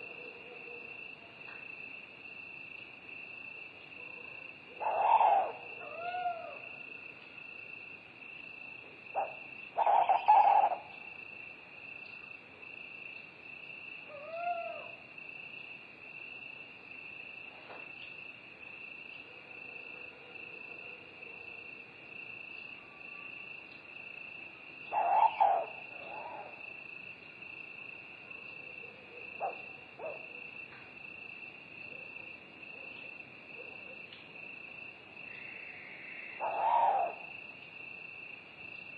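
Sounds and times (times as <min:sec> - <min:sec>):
crickets chirping: 0:00.0 - 0:38.9
owl hooting: 0:04.8 - 0:06.6, 0:09.2 - 0:10.9, 0:14.1 - 0:15.0, 0:24.9 - 0:26.6, 0:35.5 - 0:37.3.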